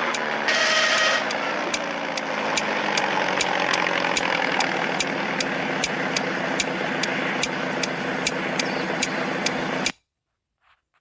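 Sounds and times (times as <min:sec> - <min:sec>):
engine idling: 0:00.0 - 0:09.9
sharp repeating tick: 0:01.2 - 0:10.0.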